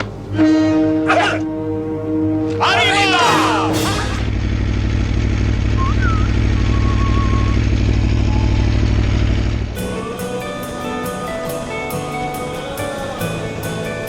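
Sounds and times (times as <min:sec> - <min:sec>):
music: 0:00.0 - 0:04.3, 0:09.8 - 0:14.0
motorcycle engine idling: 0:04.0 - 0:11.9.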